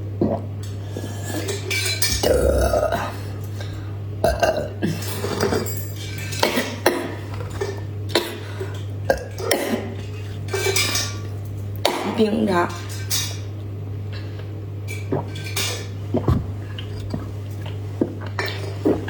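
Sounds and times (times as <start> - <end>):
steady low hum: 0.0 - 19.0
gulps and mouth smacks: 0.2 - 0.6, 14.1 - 19.0.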